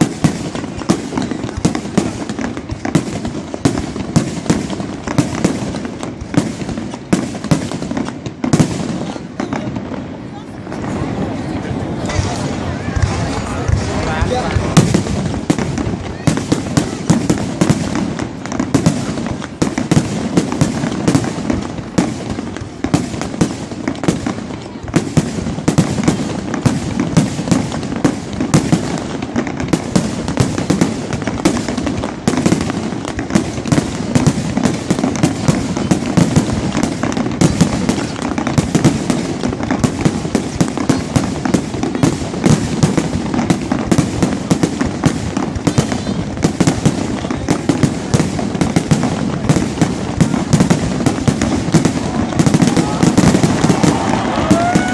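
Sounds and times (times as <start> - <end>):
fireworks bangs and crackles: 0.0 - 54.9.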